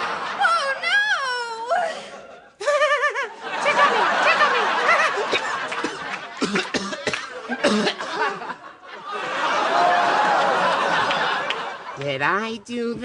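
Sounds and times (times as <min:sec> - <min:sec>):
audience laughing: 0:02.3 - 0:12.0
people coughing: 0:04.2 - 0:08.7.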